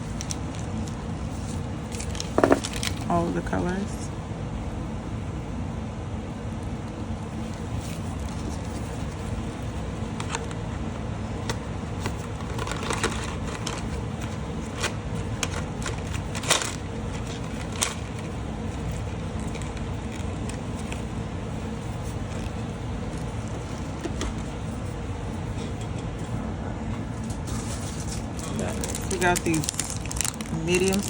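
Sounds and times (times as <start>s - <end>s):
low background hum: 0.0s - 31.0s
packaging clicks and rustles: 1.9s - 3.1s, 11.4s - 21.1s, 27.4s - 31.0s.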